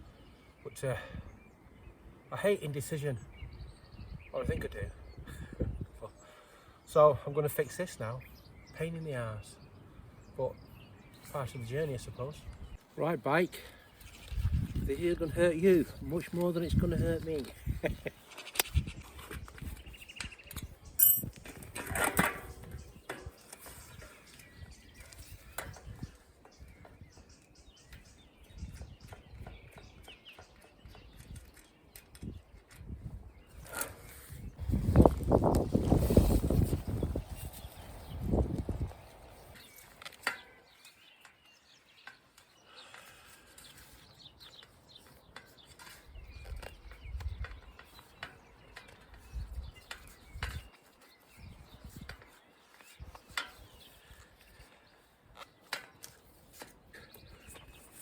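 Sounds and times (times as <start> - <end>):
birds chirping faintly: 0.0 - 58.0
wind buffeting microphone: 3.3 - 6.1, 14.0 - 39.7, 46.1 - 47.8, 48.6 - 52.3.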